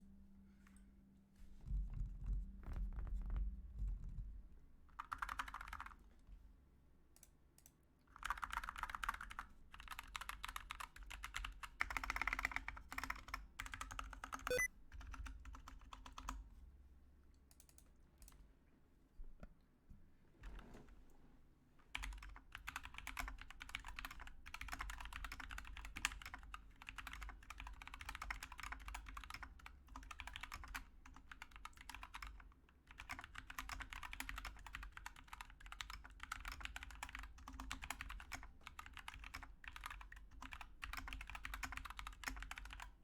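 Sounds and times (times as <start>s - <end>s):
mechanical keyboard typing: 4.9s - 6.0s, 7.6s - 16.4s, 21.9s - 43.0s.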